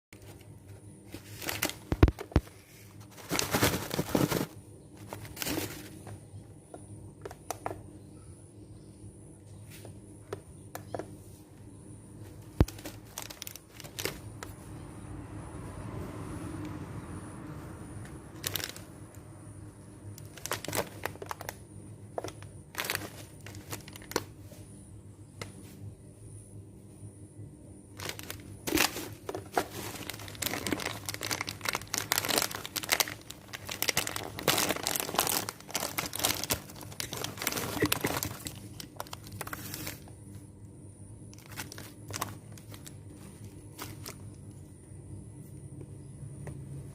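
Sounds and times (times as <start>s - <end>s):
plastic snack packet crinkling: 0.2s - 6.1s, 12.6s - 14.5s, 18.3s - 19.1s, 20.1s - 21.6s, 22.2s - 24.3s, 28.0s - 40.1s, 41.3s - 44.5s
steady low hum: 0.2s - 46.9s.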